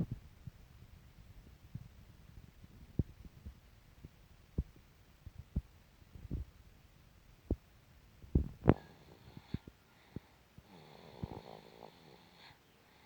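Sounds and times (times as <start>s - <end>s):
baby snoring: 10.6s - 13.0s.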